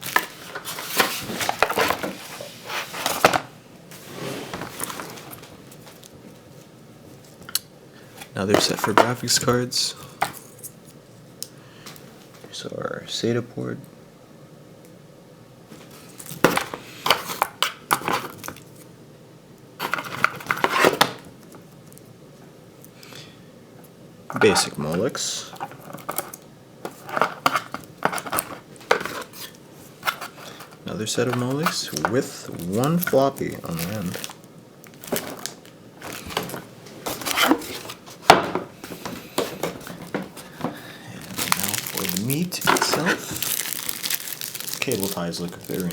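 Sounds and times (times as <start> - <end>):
plastic connectors clattering: 25.5 - 37.8, 39.0 - 45.9
plastic connectors clicking and clattering: 39.4 - 45.9.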